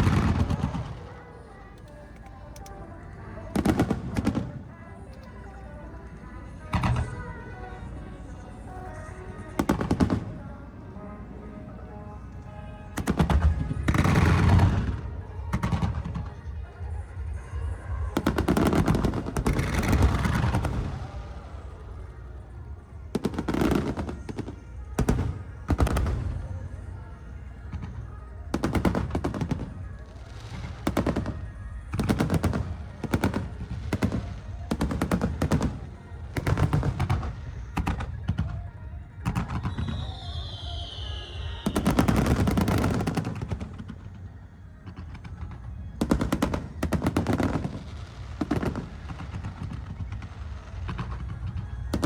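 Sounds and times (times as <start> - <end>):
fireworks booms and crackling: 0.0 - 2.3, 3.4 - 5.2, 6.6 - 7.4, 8.7 - 10.8, 12.9 - 16.9, 17.9 - 52.0
falling firework whistle: 39.3 - 43.6.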